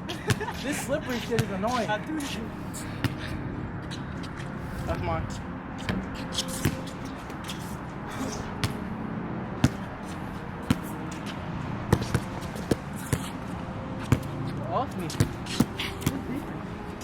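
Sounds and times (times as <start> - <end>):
basketball bouncing on wet court: 9.6 - 9.9, 11.9 - 13.3.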